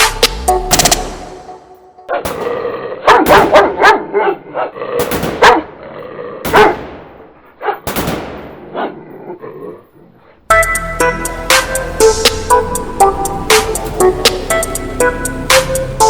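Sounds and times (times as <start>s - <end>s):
large dog barking loudly: 3.0s - 4.8s, 5.4s - 5.8s, 6.5s - 6.8s, 7.6s - 7.8s.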